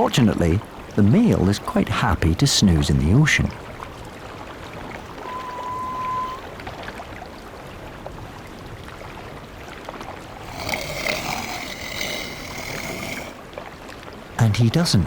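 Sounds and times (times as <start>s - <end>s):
short high tone: 5.0s - 6.5s
walrus snoring: 10.4s - 13.4s.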